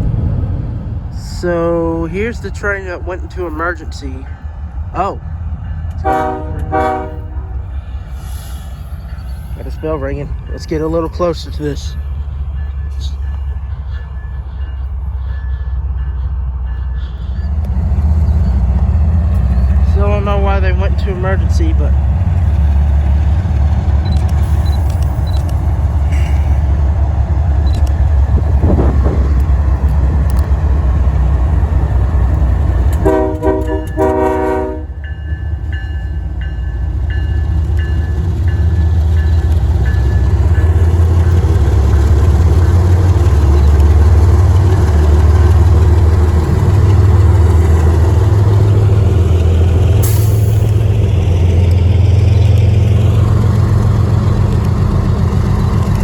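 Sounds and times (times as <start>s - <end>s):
idling engines rumbling: 0.0s - 56.0s
locomotive horn blast: 6.0s - 7.6s, 32.9s - 35.0s.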